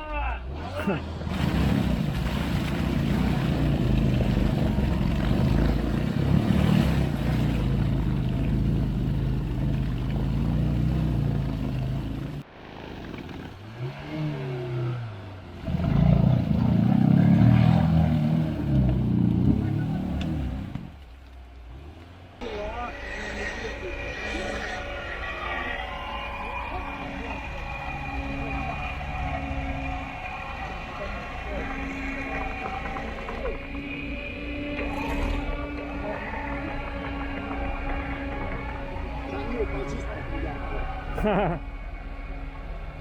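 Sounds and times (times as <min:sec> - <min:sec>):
off-road vehicle engine revving: 0:00.4 - 0:43.0.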